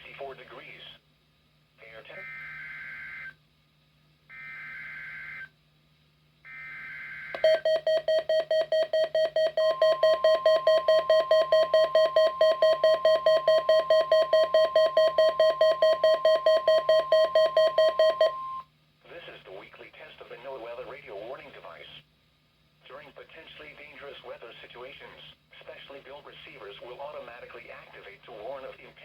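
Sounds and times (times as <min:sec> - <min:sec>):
loud pulsing beep: 0:07.4 - 0:18.6
steady warning tone: 0:07.4 - 0:18.6.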